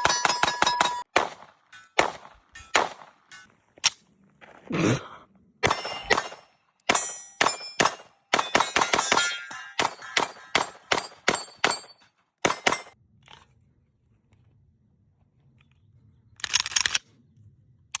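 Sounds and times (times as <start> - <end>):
pistol shots: 0.0 - 3.3, 5.6 - 13.0.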